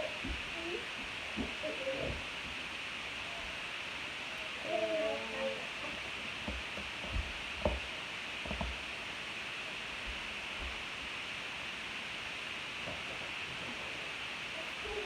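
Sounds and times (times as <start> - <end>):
steady hiss: 0.0 - 15.0.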